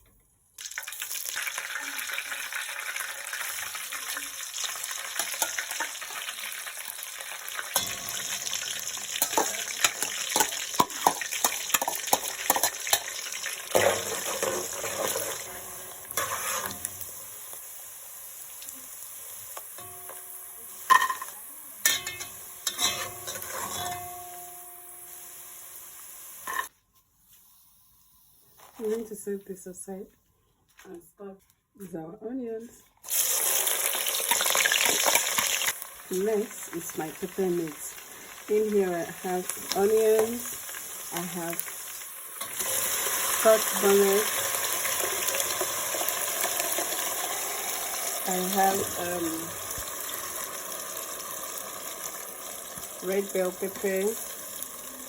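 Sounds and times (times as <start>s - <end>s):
fish sizzling in hot oil: 0.6s - 26.7s, 33.0s - 55.0s
utensil scraping a pan: 13.7s - 17.0s, 21.9s - 24.4s.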